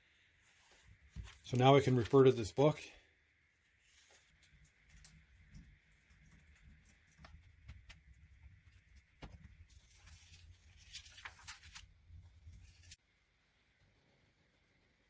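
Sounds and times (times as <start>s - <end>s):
paper rustling: 3.8s - 13.0s.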